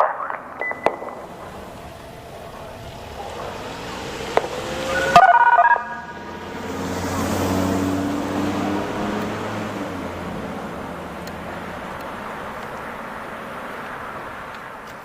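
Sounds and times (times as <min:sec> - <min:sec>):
radio signalling tones: 0:00.0 - 0:06.3
vehicle engine hum passing: 0:00.0 - 0:15.0.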